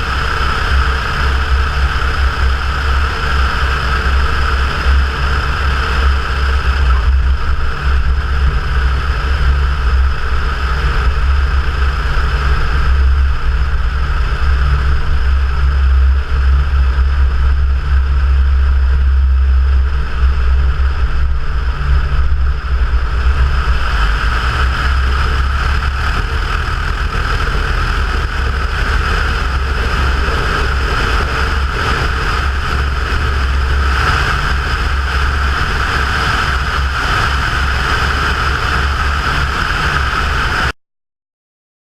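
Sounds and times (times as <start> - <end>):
rushing air: 0.0 - 40.7
airplane engine and propeller drone: 0.0 - 40.8.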